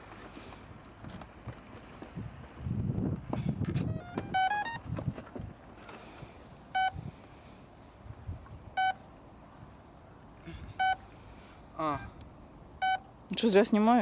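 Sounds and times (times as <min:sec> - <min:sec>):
speed controller beeping through motor: 0:03.8 - 0:04.8
rising short tones: 0:03.8 - 0:04.9.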